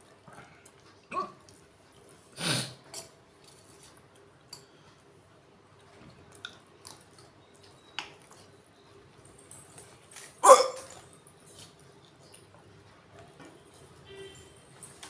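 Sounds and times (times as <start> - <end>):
person hiccuping: 1.1 - 1.4, 10.4 - 10.9.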